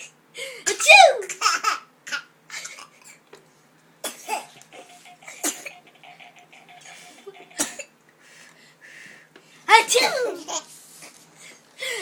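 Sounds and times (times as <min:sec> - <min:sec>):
girl sneezing: 0:00.6 - 0:01.4, 0:09.8 - 0:10.4.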